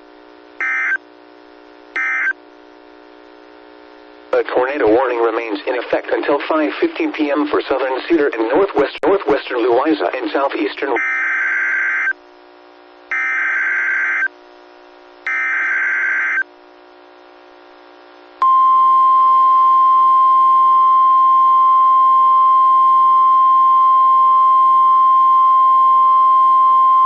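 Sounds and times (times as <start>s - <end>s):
steady warning alarm tone: 0.6s - 1.0s, 2.0s - 2.4s, 11.0s - 12.1s, 13.1s - 14.3s, 15.3s - 16.4s.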